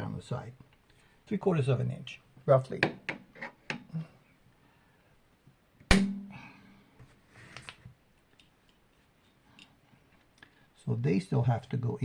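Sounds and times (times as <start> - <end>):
sharp snap with low ring: 5.9 - 6.4.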